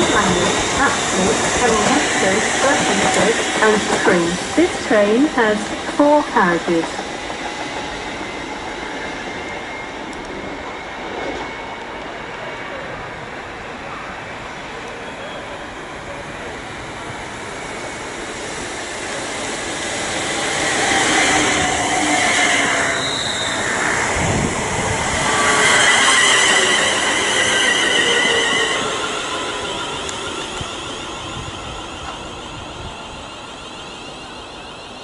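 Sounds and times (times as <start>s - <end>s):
electric train running: 0.0s - 12.1s, 14.4s - 35.0s
high squealing tones: 20.2s - 35.0s.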